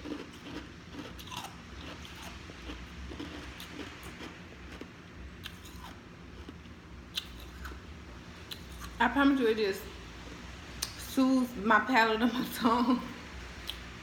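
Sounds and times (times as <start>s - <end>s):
person crunching ice: 0.0s - 2.3s.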